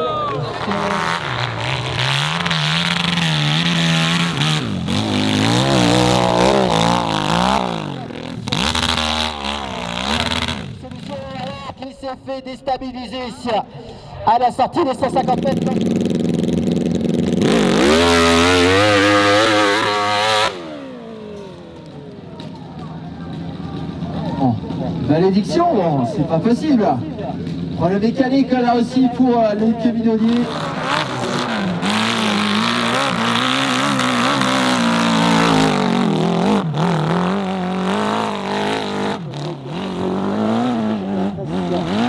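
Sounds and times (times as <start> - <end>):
motorcycle engine revving: 0.0 - 11.8, 15.0 - 42.0
commentator talking: 23.3 - 30.7.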